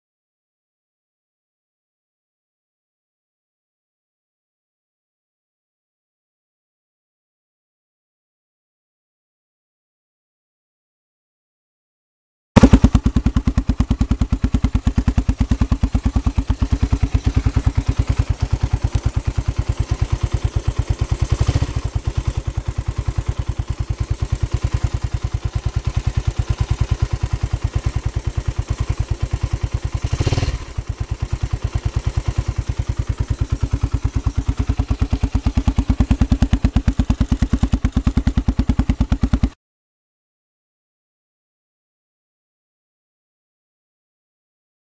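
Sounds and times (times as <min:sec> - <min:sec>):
motorcycle engine running: 0:12.6 - 0:39.6.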